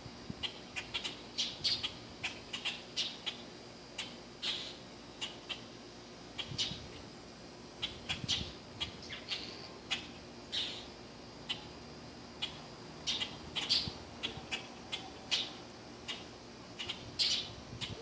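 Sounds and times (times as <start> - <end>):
baby bird chirping: 12.4 - 18.0.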